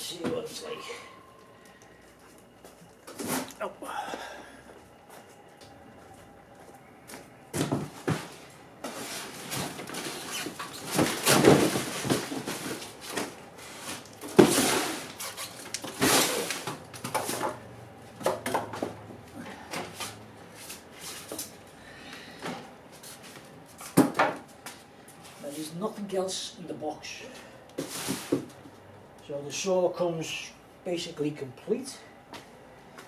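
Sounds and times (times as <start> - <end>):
packaging rustling and scraping: 7.6 - 17.5.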